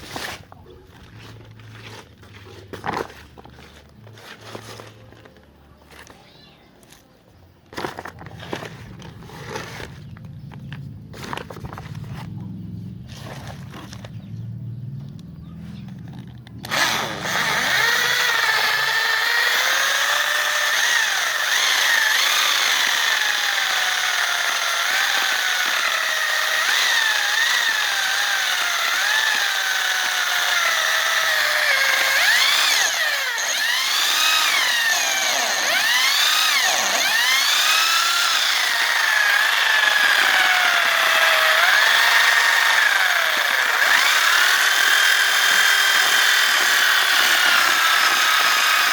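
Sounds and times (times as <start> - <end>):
electric motor whining: 16.6 - 48.9.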